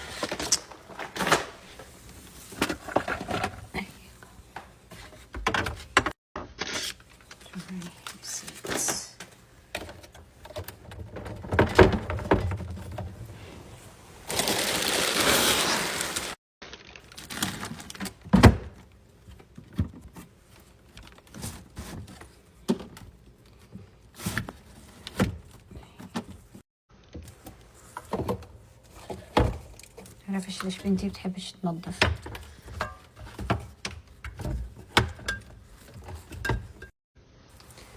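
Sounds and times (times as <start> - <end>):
items clattering in kitchen: 0.0 - 6.2, 6.8 - 16.4, 27.2 - 36.9.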